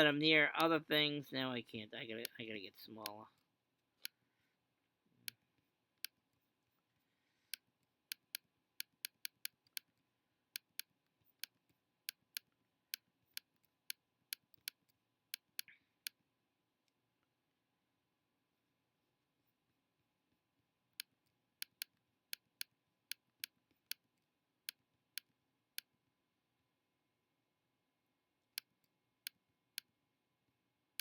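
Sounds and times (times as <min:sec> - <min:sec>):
computer mouse clicking: 0:07.5 - 0:10.0, 0:10.6 - 0:16.2, 0:21.0 - 0:25.9.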